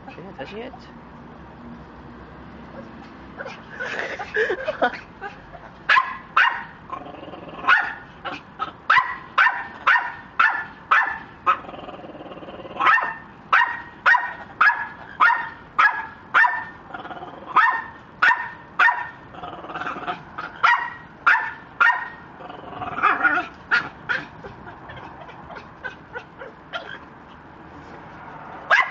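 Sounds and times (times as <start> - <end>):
dog barking: 5.9 - 6.8, 7.6 - 11.6, 12.8 - 16.8, 17.6 - 19.2, 20.4 - 22.2, 28.7 - 28.9.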